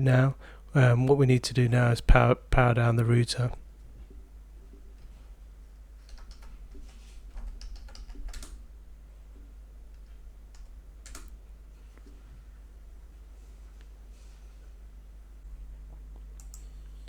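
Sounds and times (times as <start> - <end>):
low steady hum: 0.0 - 17.0
computer keyboard and mouse clicks: 6.0 - 8.6, 10.5 - 11.4, 16.4 - 16.7.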